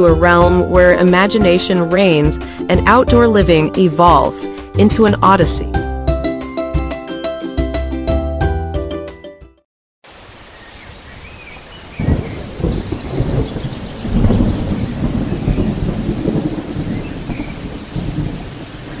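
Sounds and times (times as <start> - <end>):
steady rain: 10.0 - 19.0
rolling thunder: 11.9 - 19.0.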